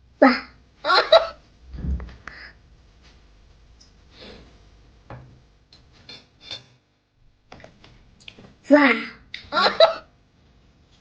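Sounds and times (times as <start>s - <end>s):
soft low thump: 1.7s - 2.2s
quiet breathing: 2.1s - 2.7s, 4.0s - 4.7s.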